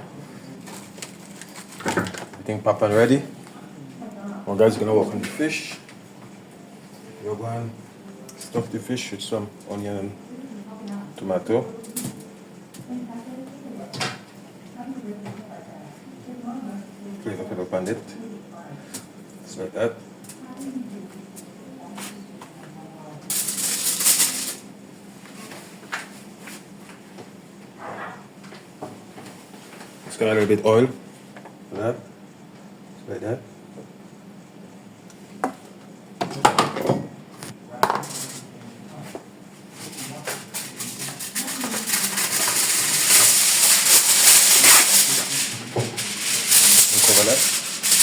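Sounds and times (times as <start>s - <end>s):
rustling crinkling: 39.8s - 48.0s.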